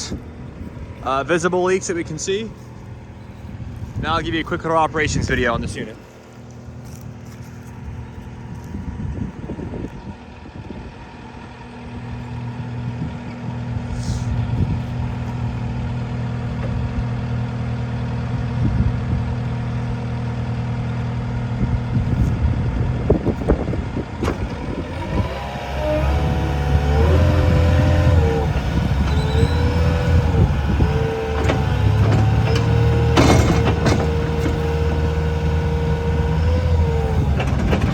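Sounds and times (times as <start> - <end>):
diesel engine running: 0.0 - 37.9
metal clanks: 30.8 - 34.7.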